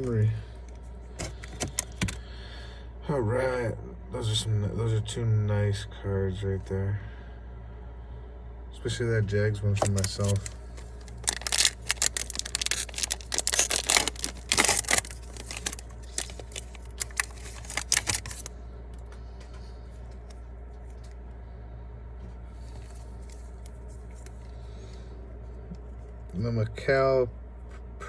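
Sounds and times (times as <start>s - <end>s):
steady low hum: 0.0s - 28.0s
foil wrapper tearing and crinkling: 9.8s - 18.5s.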